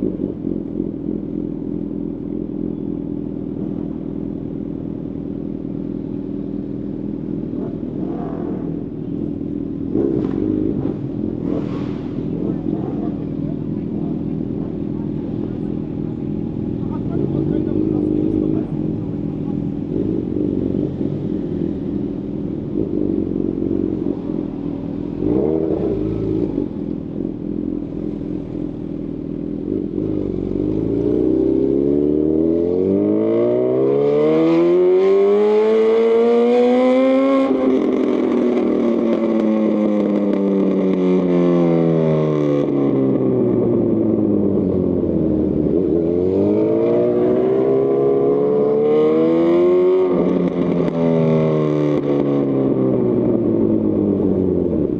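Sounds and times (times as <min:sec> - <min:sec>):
motorcycle engine revving: 0:00.0 - 0:54.9.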